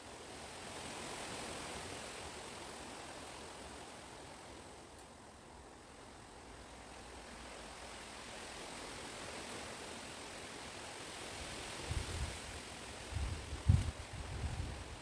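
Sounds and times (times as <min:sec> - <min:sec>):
wind rushing through trees: 0:00.0 - 0:15.0
wind gusts buffeting microphone: 0:11.8 - 0:15.0.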